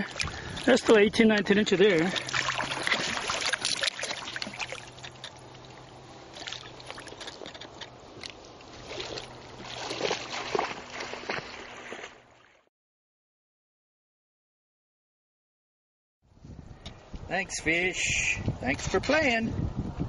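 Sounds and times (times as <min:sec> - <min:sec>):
river water splashing: 0:00.0 - 0:12.7.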